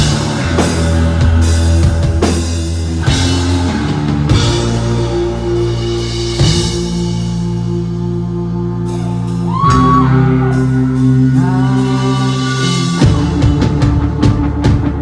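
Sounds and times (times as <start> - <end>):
drum kit beat: 0.0 - 8.0, 11.4 - 15.0
guitar and bass chords: 0.0 - 15.0
person singing: 8.6 - 15.0.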